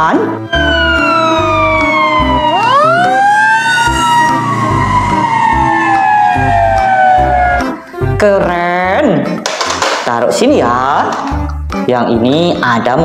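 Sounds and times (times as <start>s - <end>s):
fire engine wail siren: 0.1s - 7.9s.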